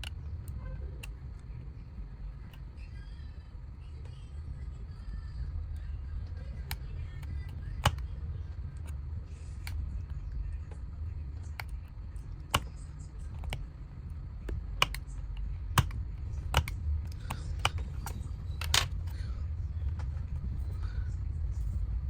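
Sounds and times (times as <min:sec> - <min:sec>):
steady low hum: 0:00.0 - 0:22.0
tools clicking on plastic housing: 0:05.8 - 0:08.1, 0:08.8 - 0:20.2.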